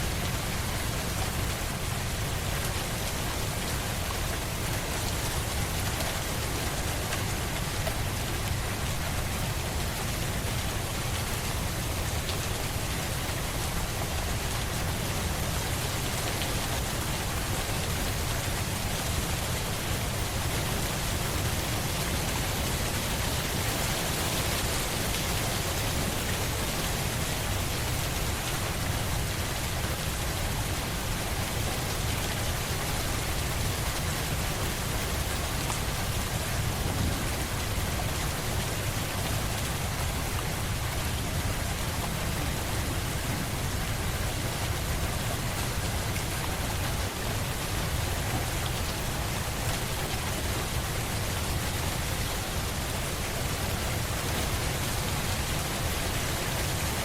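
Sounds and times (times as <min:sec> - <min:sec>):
rain falling onto surfaces: 0:00.0 - 0:57.0.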